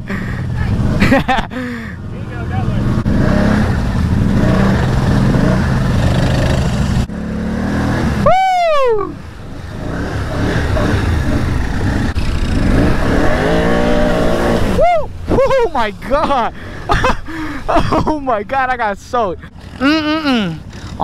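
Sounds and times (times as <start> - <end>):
atv engine under throttle: 0.0 - 17.7, 19.4 - 21.0
rider shouting: 8.2 - 9.2.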